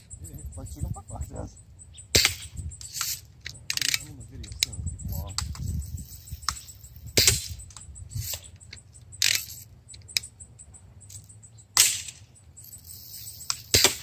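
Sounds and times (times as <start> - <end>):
bb guns firing: 2.1 - 4.2, 6.5 - 7.8, 11.8 - 12.3, 13.5 - 14.0.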